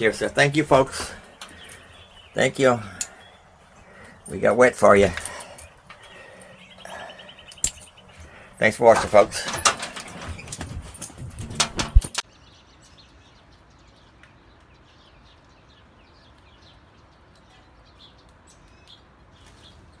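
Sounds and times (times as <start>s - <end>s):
faint birds chirping: 0.0s - 20.0s.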